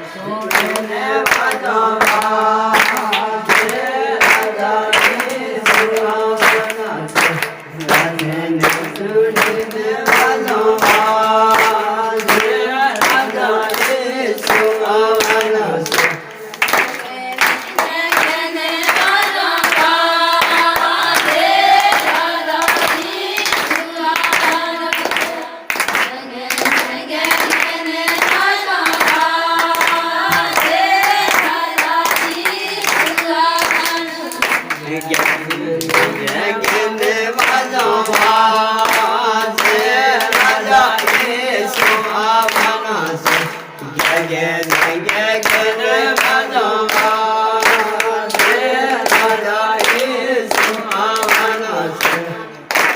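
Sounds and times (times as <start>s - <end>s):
group singing: 0.0s - 52.9s
hand clapping: 0.3s - 52.9s.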